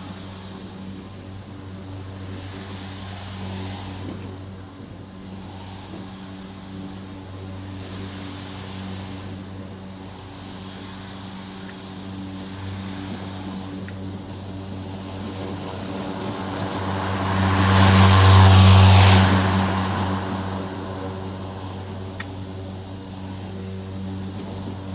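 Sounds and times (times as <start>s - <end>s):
lawn mower engine running: 12.9s - 24.9s.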